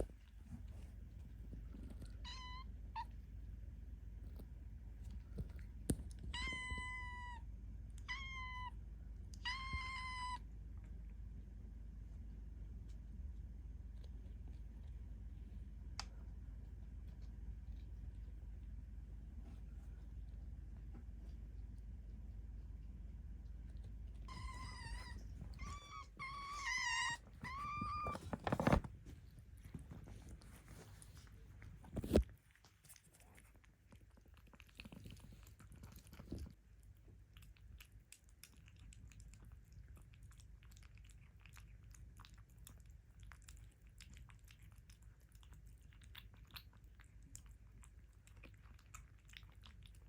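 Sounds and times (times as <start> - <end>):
kitten meowing: 6.3 - 7.4, 9.4 - 10.4, 24.2 - 28.2.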